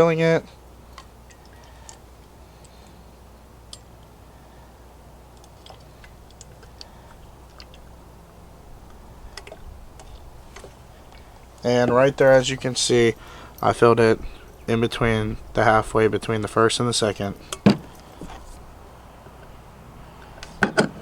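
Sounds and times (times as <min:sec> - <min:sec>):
faint handling sounds: 0:17.0 - 0:19.6.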